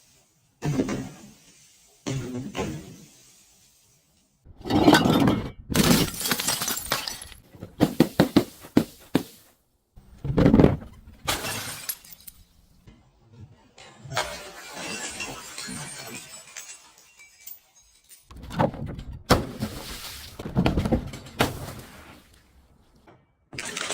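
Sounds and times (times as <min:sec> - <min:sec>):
glass shattering: 0:04.6 - 0:08.0, 0:11.3 - 0:12.6, 0:14.2 - 0:18.4.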